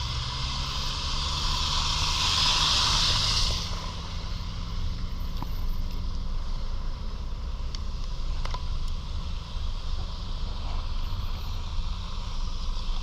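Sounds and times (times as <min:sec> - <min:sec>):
low engine hum: 0:00.0 - 0:13.0
tyre hiss on slush: 0:00.1 - 0:04.4.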